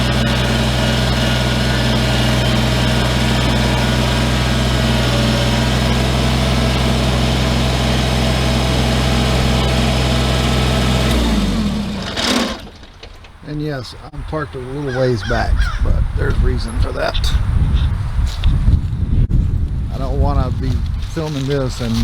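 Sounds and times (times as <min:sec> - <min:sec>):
tractor engine running: 0:00.0 - 0:17.2.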